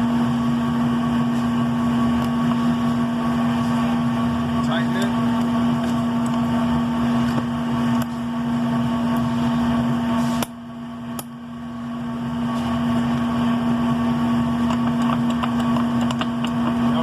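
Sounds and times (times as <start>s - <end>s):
workshop machinery drone: 0.0s - 17.0s.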